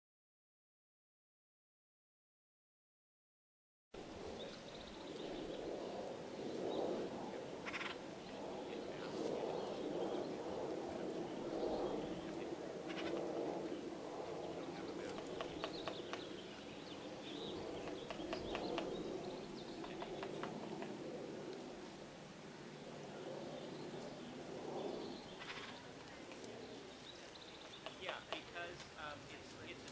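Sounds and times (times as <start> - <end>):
woodpecker calls: 7.6 - 8.0, 12.9 - 13.2, 15.0 - 21.0, 25.2 - 25.9, 26.8 - 29.8
woodpecker tapping on wood: 15.0 - 16.3, 17.8 - 19.0, 19.8 - 20.9, 27.6 - 29.0.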